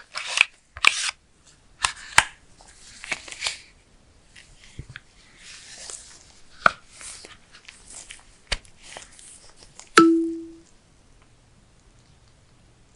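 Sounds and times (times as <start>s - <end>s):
packaging rustling and crinkling: 4.4s - 10.0s
short low ringing tone: 10.0s - 10.6s.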